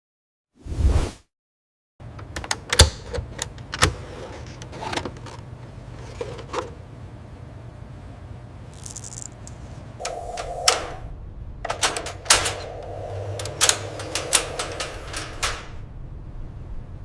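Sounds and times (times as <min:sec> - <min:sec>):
steady low hum: 0:07.4 - 0:17.0
hiss: 0:10.0 - 0:11.1, 0:11.8 - 0:15.8
sharp mechanical clicks: 0:11.7 - 0:15.8.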